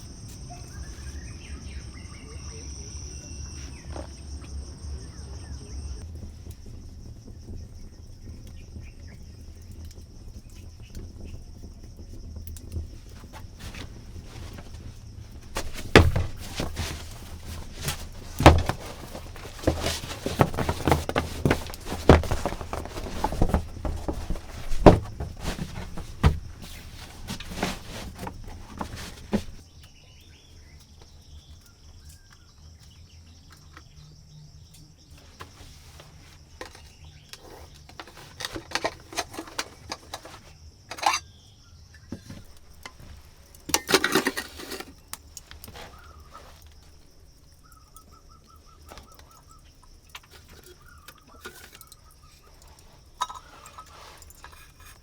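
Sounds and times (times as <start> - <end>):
high insect trill: 0.0 - 55.0
sharp knocks and thuds: 12.8 - 29.6
rustling: 12.8 - 29.7, 35.2 - 41.2, 42.2 - 47.4, 50.3 - 55.0.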